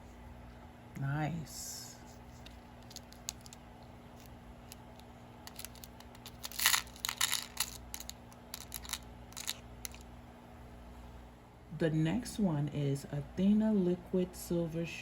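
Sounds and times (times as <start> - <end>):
beads clicking: 4.2 - 10.0
plastic packets crinkling: 5.5 - 10.0.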